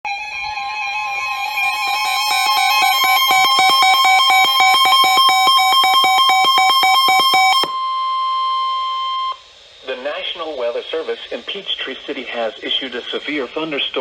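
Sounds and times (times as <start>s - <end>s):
steady warning tone: 0.1s - 13.5s
fast pulsing alarm beeps: 1.2s - 9.4s.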